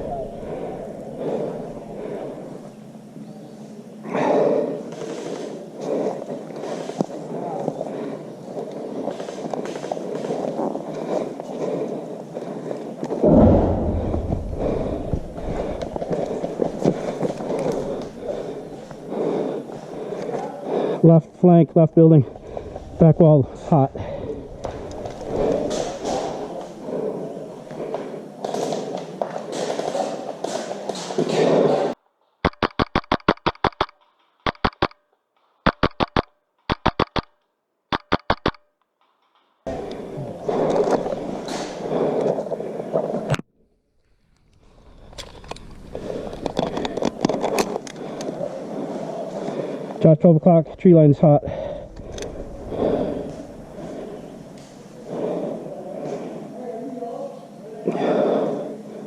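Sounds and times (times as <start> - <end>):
footsteps: 13.0 - 20.5
heavy thump on microphone: 13.2 - 17.1
loud rushing noise: 13.2 - 17.1
airsoft rifle firing bursts: 32.4 - 35.0, 35.6 - 37.3, 37.9 - 38.6
sharp clicks: 32.4 - 35.0, 35.6 - 39.5.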